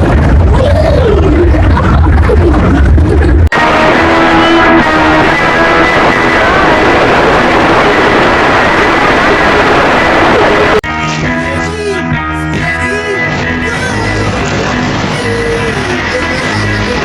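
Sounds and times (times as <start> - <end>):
distorted noisy remix music: 0.0 - 17.0
guitar-led music: 3.1 - 17.0.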